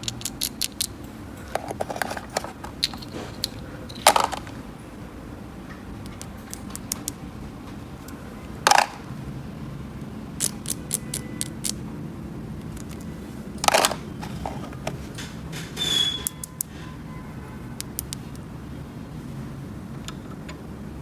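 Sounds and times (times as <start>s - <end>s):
plastic toy pieces clicking: 0.0s - 4.5s, 6.0s - 7.2s, 8.7s - 9.0s, 10.4s - 11.8s, 12.7s - 14.8s, 16.1s - 16.7s, 17.8s - 18.4s
toy pieces clattering: 0.0s - 4.6s, 6.1s - 7.2s, 8.6s - 9.1s, 10.4s - 11.8s, 12.8s - 15.0s.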